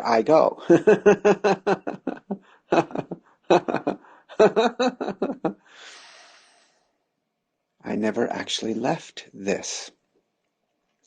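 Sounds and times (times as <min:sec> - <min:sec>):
man speaking: 0:00.0 - 0:06.2, 0:07.8 - 0:09.9
soft breathy hiss: 0:05.5 - 0:06.9.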